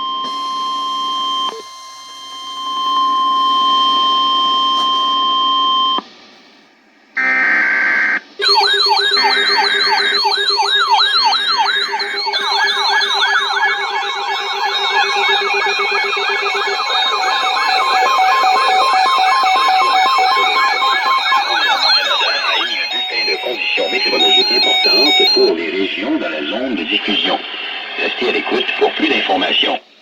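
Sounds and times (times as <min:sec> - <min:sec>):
electronic sirens wailing: 0:00.0 - 0:06.0, 0:07.2 - 0:25.8
chord-like tone: 0:08.4 - 0:25.5
steady electronic alert tone: 0:08.4 - 0:25.6.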